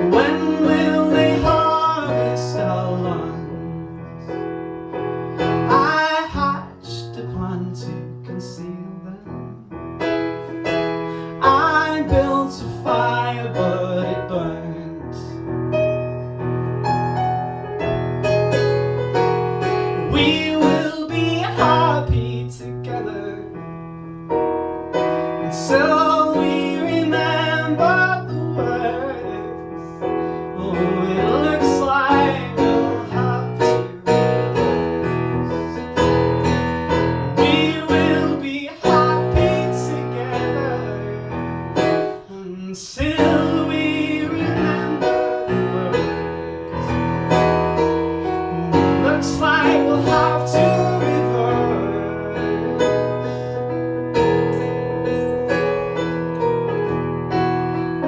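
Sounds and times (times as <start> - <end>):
person singing: 0.0 - 4.1, 5.7 - 9.6, 11.3 - 15.4, 20.0 - 23.6, 25.4 - 29.8, 30.5 - 34.8, 37.3 - 47.4, 48.1 - 53.5.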